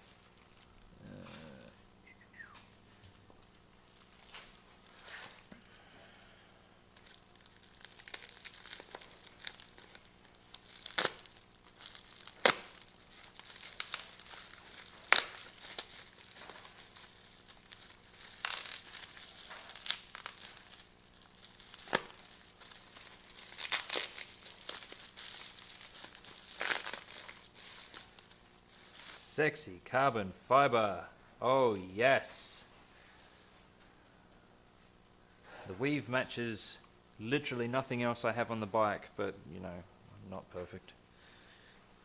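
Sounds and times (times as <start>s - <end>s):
packaging crinkling: 0.0s - 0.9s, 3.8s - 5.8s, 6.9s - 28.8s.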